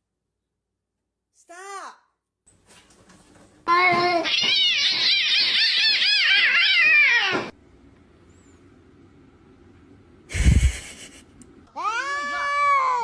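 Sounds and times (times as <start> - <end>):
cat yowling: 3.8 - 7.6, 11.8 - 13.0.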